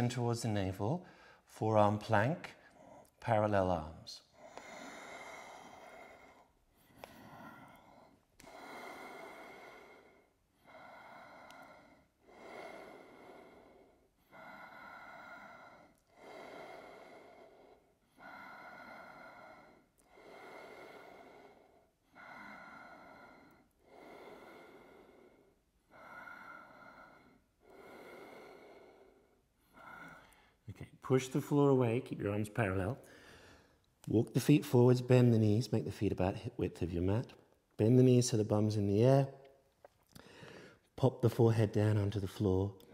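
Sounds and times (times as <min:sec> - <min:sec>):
person breathing slowly: 0:01.0 - 0:01.5, 0:04.2 - 0:30.7, 0:33.0 - 0:34.0, 0:39.5 - 0:41.0.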